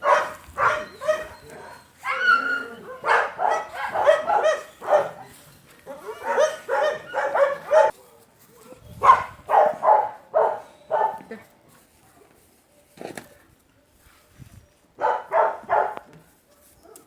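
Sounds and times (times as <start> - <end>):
dog barking: 0.0 - 5.3, 5.9 - 8.2, 9.0 - 11.3, 15.0 - 17.0.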